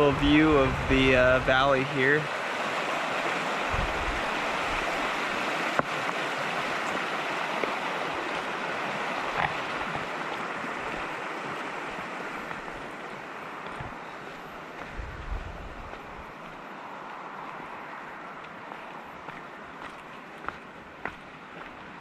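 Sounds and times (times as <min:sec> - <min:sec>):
creek water rushing: 0:00.0 - 0:22.0.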